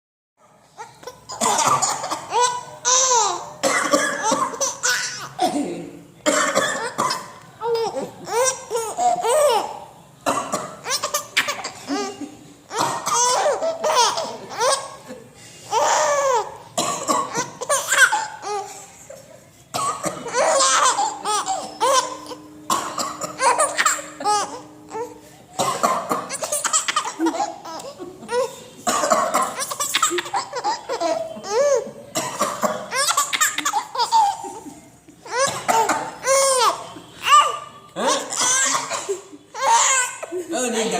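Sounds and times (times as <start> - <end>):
baby laughing: 0.8 - 5.6, 6.6 - 9.9, 10.8 - 19.3, 19.9 - 25.2, 26.1 - 32.1, 32.7 - 40.5
person coughing: 5.4 - 7.3, 16.8 - 17.8, 25.6 - 30.5, 34.4 - 36.4, 38.0 - 39.4.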